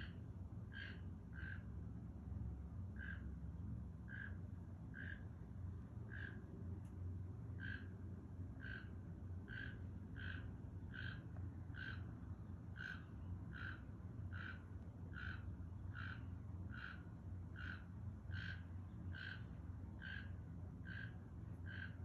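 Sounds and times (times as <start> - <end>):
low steady hum: 0.0 - 22.0
toucan calling: 9.5 - 12.1, 12.8 - 17.0, 17.6 - 22.0.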